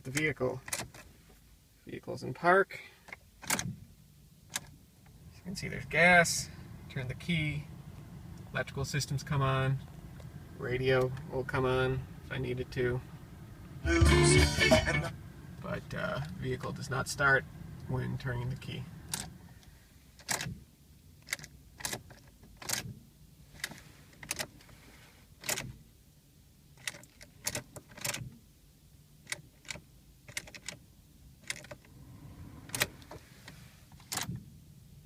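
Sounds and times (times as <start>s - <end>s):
faint steady hum: 0.0s - 35.0s
ignition key clicking: 3.1s - 3.7s, 4.5s - 4.7s, 20.2s - 20.5s, 21.2s - 22.9s, 23.6s - 24.6s, 25.4s - 25.7s, 26.8s - 28.2s, 29.2s - 30.8s, 31.4s - 31.9s, 32.6s - 33.2s, 34.0s - 34.4s.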